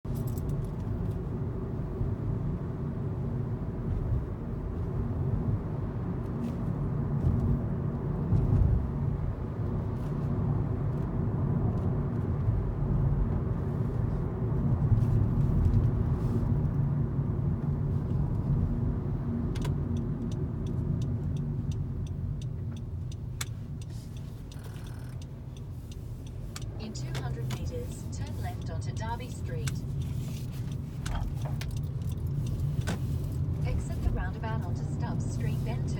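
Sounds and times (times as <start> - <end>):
road and engine rumble: 0.0 - 35.9
sharp ticks: 19.8 - 32.9.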